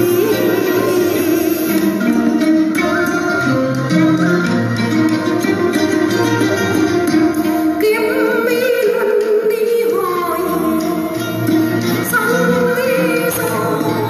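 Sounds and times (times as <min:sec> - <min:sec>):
instrumental accompaniment: 0:00.0 - 0:14.0
woman singing: 0:02.7 - 0:04.3, 0:07.8 - 0:14.0.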